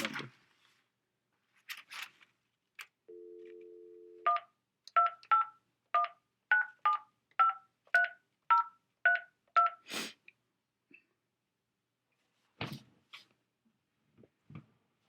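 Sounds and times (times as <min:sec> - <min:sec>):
telephone dial tone: 0:03.1 - 0:04.4.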